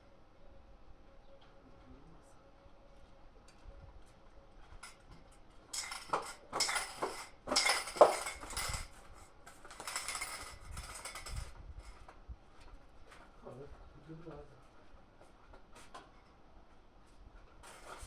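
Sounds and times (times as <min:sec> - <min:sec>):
hard objects clattering and clinking: 0:05.7 - 0:09.0, 0:09.6 - 0:11.5.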